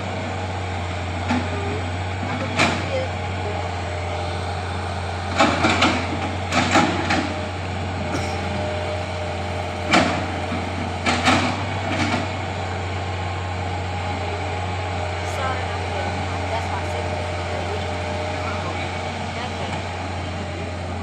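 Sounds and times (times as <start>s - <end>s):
excavator engine running: 0.0s - 21.0s
metal clanks and knocks: 5.3s - 8.8s.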